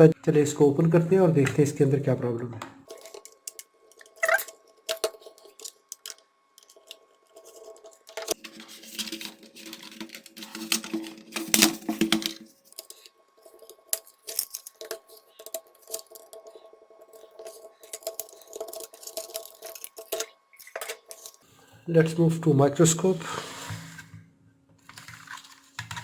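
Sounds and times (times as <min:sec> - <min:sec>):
scraping on plastic: 0:04.9 - 0:21.4, 0:23.2 - 0:24.2, 0:24.8 - 0:26.0.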